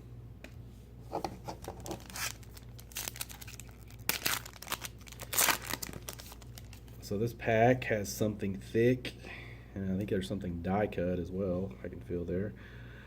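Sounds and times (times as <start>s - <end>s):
wrapper tearing and crinkling: 1.4s - 7.0s.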